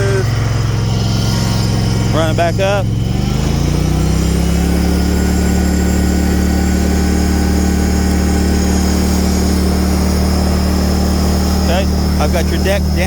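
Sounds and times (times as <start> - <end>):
mower engine running: 0.0 - 13.0.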